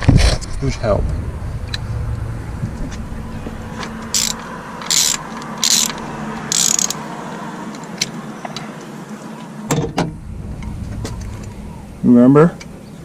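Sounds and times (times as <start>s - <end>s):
socket ratchet clicking: 4.2s - 7.0s.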